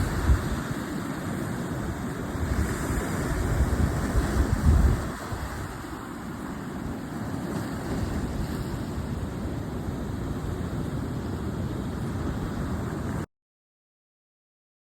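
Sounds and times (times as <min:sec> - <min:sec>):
wind buffeting microphone: 0:00.0 - 0:13.2
sea surf rushing: 0:00.0 - 0:13.3.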